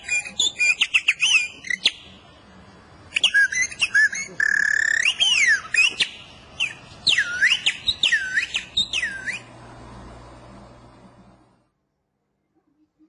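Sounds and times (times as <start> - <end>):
bird-call whistle chirps: 0.0 - 2.0, 3.2 - 9.5.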